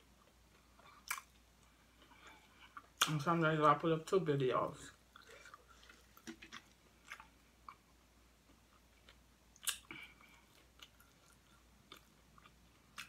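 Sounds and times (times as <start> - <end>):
person chewing crunchy food: 5.1 - 13.0.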